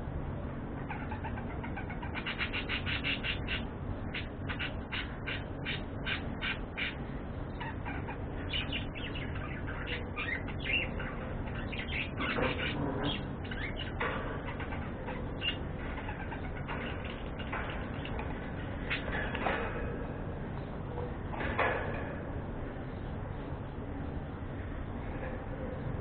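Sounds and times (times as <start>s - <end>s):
budgerigars chirping: 0.9s - 18.2s.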